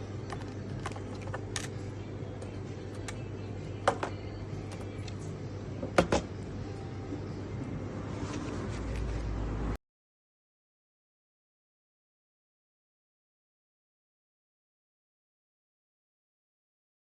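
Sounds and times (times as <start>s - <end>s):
steady low hum: 0.0s - 9.8s.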